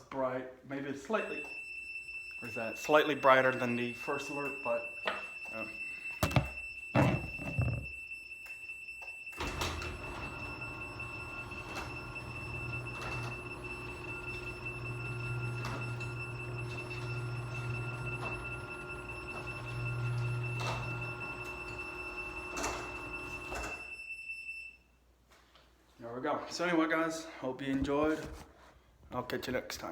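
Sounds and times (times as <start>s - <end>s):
smoke alarm tone: 1.0s - 25.0s
garage door opener motor hum: 9.3s - 24.0s.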